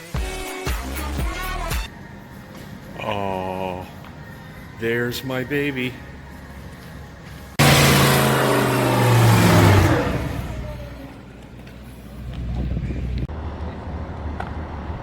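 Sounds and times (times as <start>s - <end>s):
second quieter engine: 4.3s - 14.9s
car engine revving: 7.6s - 11.4s.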